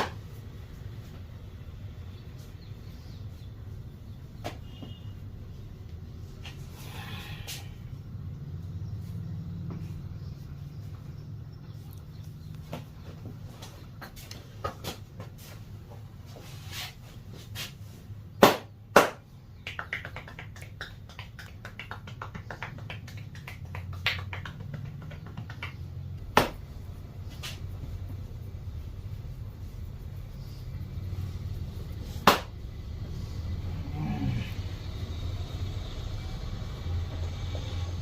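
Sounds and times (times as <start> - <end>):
hands smacking: 18.4 - 26.8, 32.1 - 32.6
light taps and pats: 19.6 - 28.2
low hum: 25.7 - 38.0.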